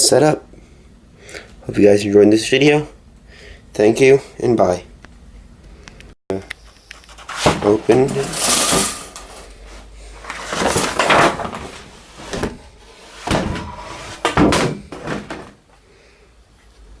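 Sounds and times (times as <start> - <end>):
microphone handling knocks and rustles: 10.3 - 15.6.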